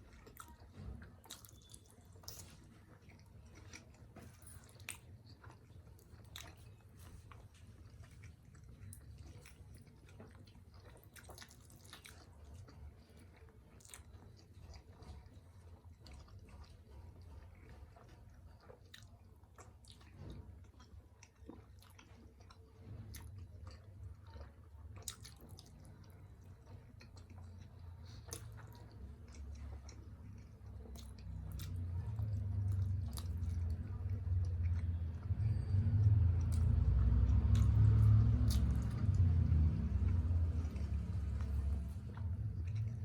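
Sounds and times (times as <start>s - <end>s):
close chewing mouth sounds: 0.0s - 43.0s
low rumble: 31.4s - 43.0s.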